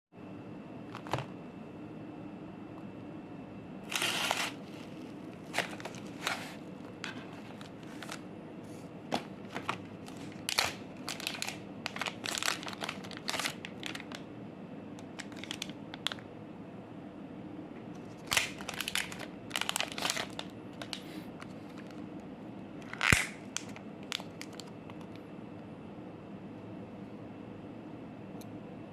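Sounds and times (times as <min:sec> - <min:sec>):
faint steady hum: 0:00.2 - 0:28.9
plastic crinkling: 0:03.9 - 0:08.3, 0:09.1 - 0:14.2, 0:15.0 - 0:16.2, 0:18.2 - 0:22.0, 0:22.9 - 0:25.2.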